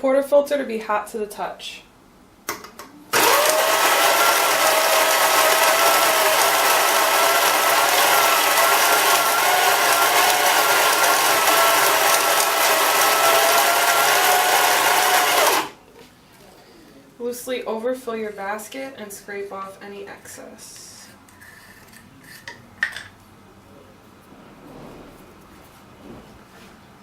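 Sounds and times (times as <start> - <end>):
coffee grinder grinding beans: 3.2 - 15.8.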